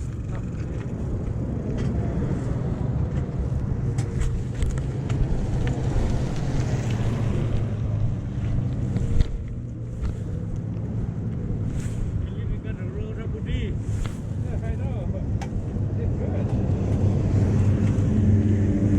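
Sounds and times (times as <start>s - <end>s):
wind on microphone: 0.0s - 12.7s.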